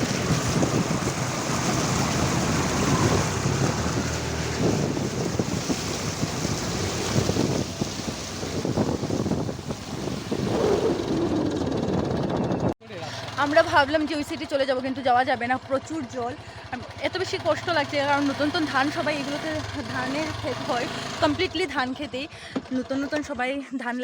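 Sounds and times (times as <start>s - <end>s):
wind buffeting microphone: 0.0s - 12.8s
low engine rumble: 0.0s - 23.6s.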